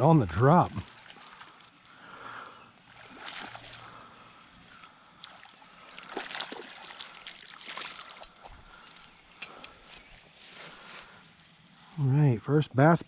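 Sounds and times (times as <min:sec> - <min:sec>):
water splashing in a creek: 0:00.0 - 0:09.1.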